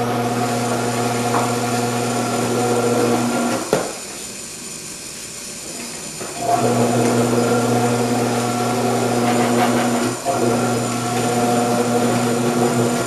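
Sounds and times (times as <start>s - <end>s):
vegetable cutter motor humming: 0.0s - 3.9s, 6.3s - 13.0s.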